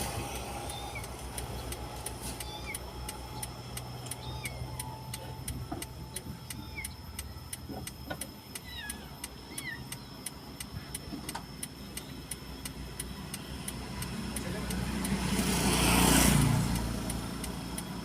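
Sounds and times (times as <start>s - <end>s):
high falling chirps: 0.0s - 14.1s
car engine idling: 0.0s - 18.0s
steady ticking: 0.0s - 18.0s.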